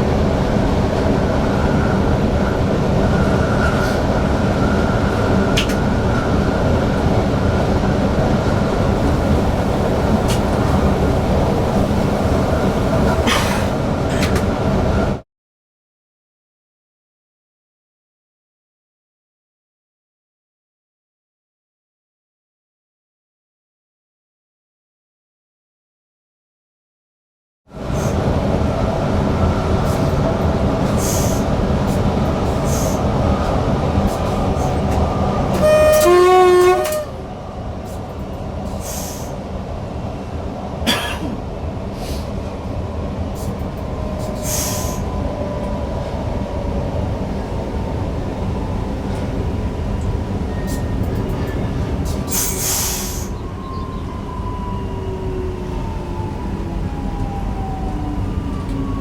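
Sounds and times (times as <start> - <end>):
falling whine of train: 0.0 - 15.2, 27.7 - 59.0
train rolling and drive noise: 0.0 - 15.2, 27.7 - 59.0
train horn blast: 35.5 - 37.3.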